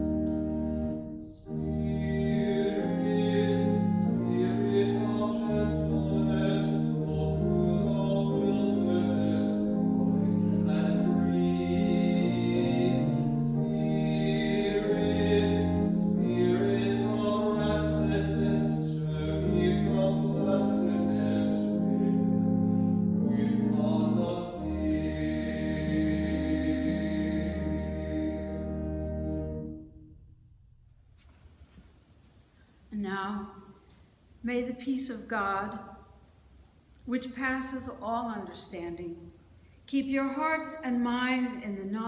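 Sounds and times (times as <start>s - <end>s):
person singing a hymn: 0.0s - 29.8s
keyboard chords: 0.0s - 30.3s.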